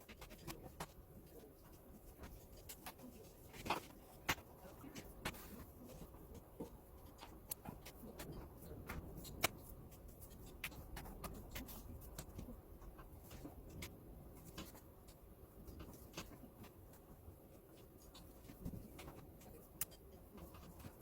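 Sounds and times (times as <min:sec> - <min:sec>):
faint sharp clicks and taps: 0:00.0 - 0:21.0.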